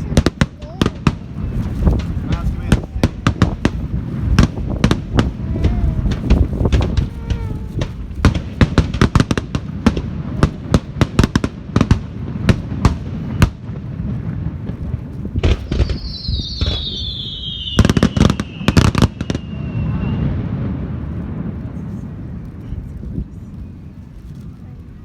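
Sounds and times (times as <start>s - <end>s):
firework bangs and crackles: 0.0s - 25.0s
low rumble: 1.2s - 10.7s
firework whistle sliding down: 15.6s - 20.4s.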